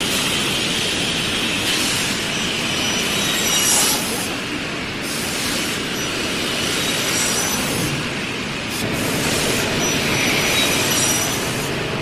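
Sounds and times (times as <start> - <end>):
high saw whine: 1.8 - 4.2, 9.4 - 11.8.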